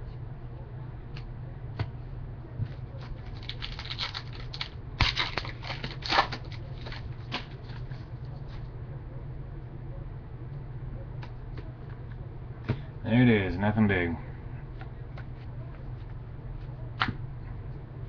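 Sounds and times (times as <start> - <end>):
low electrical hum: 0.0 - 18.0
card wrapper crinkling: 3.2 - 8.0.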